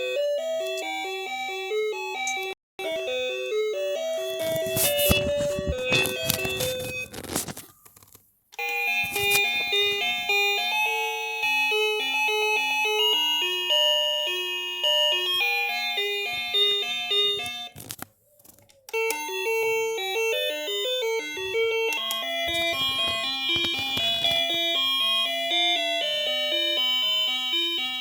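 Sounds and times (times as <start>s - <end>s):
electronic doorbell chime melody: 0.0s - 7.1s, 8.6s - 17.8s, 18.9s - 28.0s.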